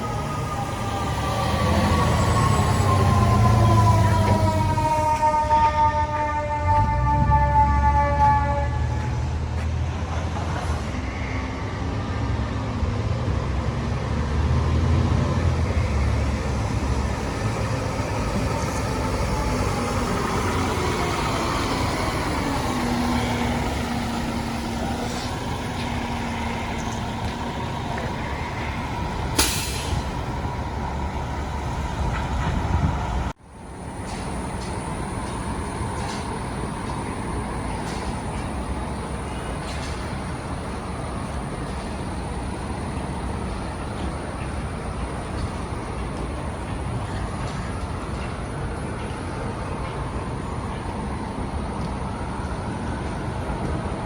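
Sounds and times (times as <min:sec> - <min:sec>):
heavy diesel engine rumbling: 0:00.0 - 0:54.0
traffic hum: 0:00.0 - 0:54.0
air brakes hissing: 0:28.4 - 0:31.6.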